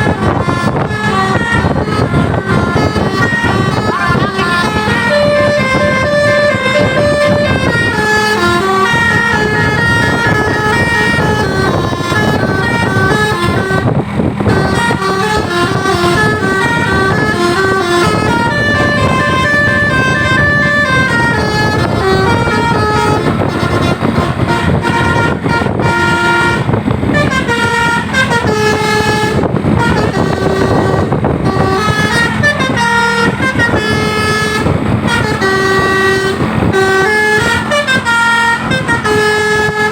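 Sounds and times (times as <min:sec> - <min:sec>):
musical bus horns: 0:00.0 - 0:39.9
road vehicle noise: 0:00.0 - 0:39.9.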